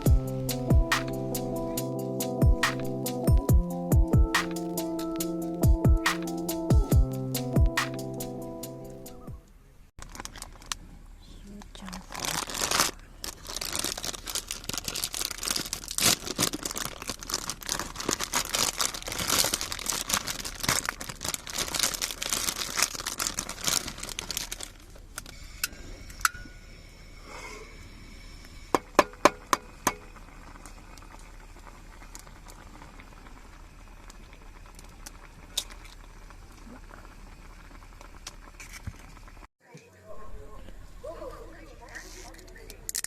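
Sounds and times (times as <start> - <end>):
crinkling rustling handling noise: 10.0 - 25.4.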